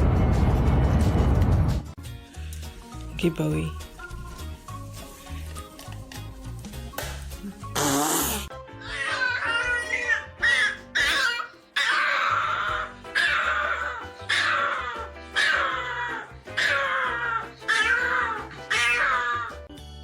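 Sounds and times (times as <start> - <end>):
background music: 0.0 - 20.0
cat yowling: 8.8 - 19.7.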